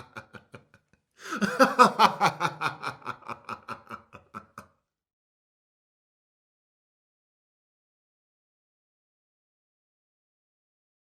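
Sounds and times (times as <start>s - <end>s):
person laughing: 0.0s - 4.6s.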